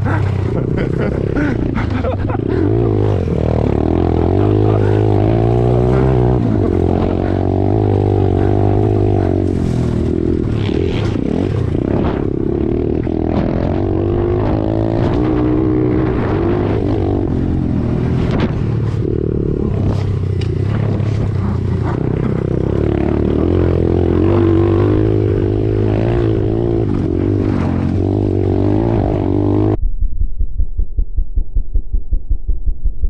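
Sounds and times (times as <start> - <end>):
dirt bike engines revving: 0.0 - 29.8
muffled pulsing throb: 29.0 - 33.0.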